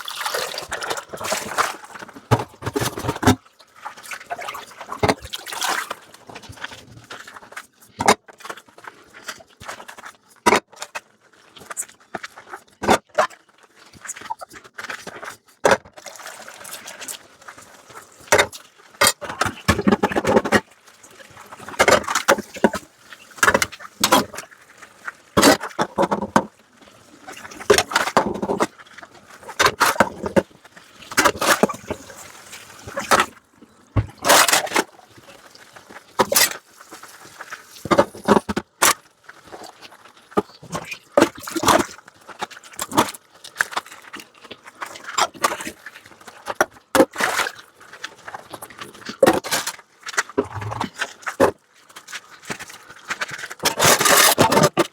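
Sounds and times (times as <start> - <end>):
running water: 20.8 - 38.5
scrubbing dishes: 29.4 - 38.7.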